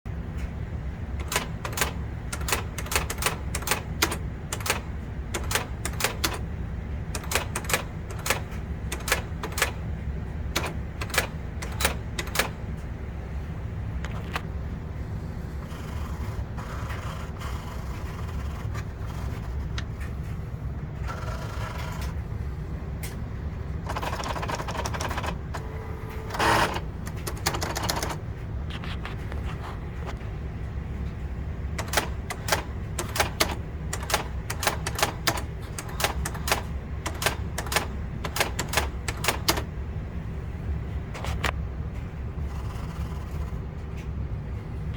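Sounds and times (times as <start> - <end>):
steady low hum: 0.1 - 44.9
typewriter mechanism whirring: 1.1 - 12.9, 15.6 - 20.2, 21.0 - 22.2, 23.8 - 28.2, 31.7 - 39.7
typewriter print strikes: 1.1 - 12.9, 15.6 - 20.2, 21.0 - 22.2, 23.8 - 28.2, 31.7 - 39.7.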